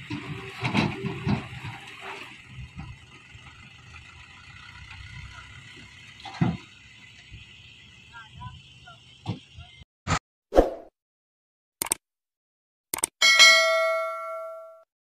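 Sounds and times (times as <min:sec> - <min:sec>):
diesel engine running: 0:00.0 - 0:09.8.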